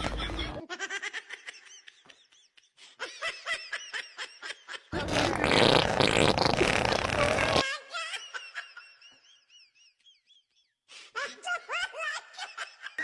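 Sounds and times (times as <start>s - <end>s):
loud fart noise: 5.0s - 7.6s.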